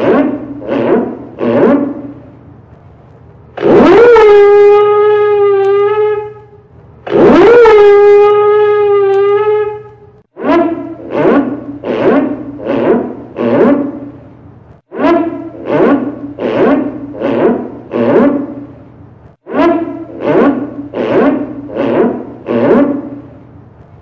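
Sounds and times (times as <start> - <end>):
ship's alarm siren blasts: 3.6 - 14.1, 14.9 - 18.7, 19.4 - 23.3.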